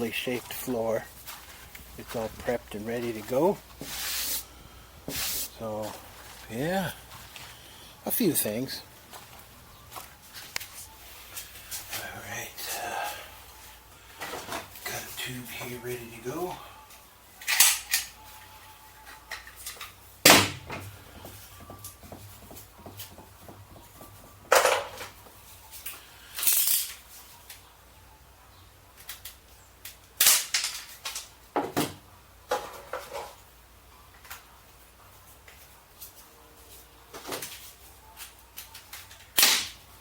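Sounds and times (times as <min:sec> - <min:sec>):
tools clicking and knocking: 0:19.3 - 0:25.2.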